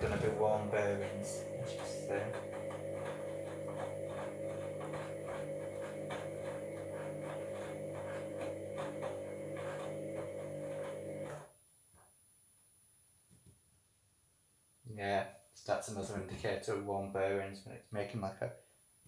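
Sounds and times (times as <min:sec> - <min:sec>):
drum rattling and grinding: 0:00.0 - 0:11.4
washing machine motor hum: 0:00.0 - 0:11.5.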